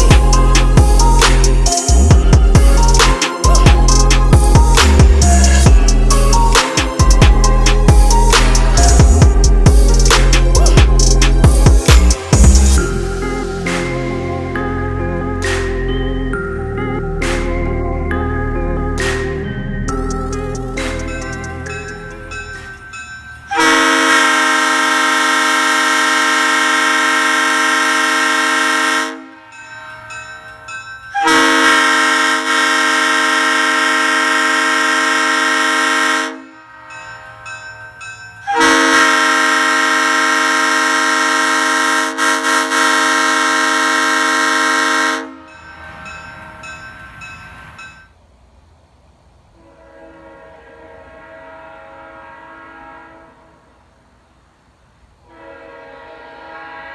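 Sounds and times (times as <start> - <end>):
locomotive air horn blasts: 0.0 - 14.7, 23.5 - 29.5, 31.2 - 36.9, 38.5 - 45.6, 49.6 - 53.9, 55.2 - 56.9.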